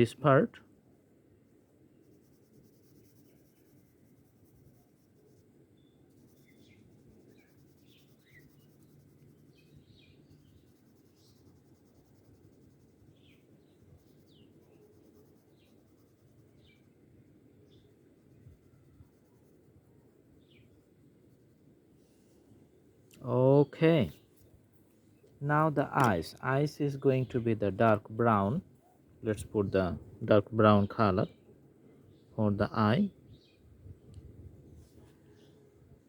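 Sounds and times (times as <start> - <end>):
pencil scratching on paper: 2.0 - 16.9, 17.7 - 21.6.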